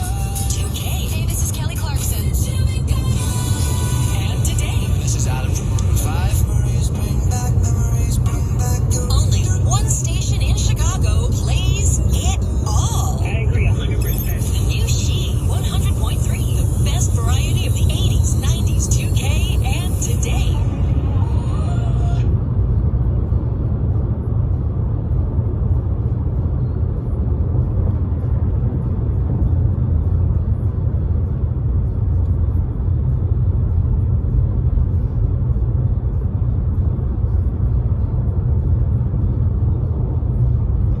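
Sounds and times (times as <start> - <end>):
steady low rumble: 0.0 - 41.0.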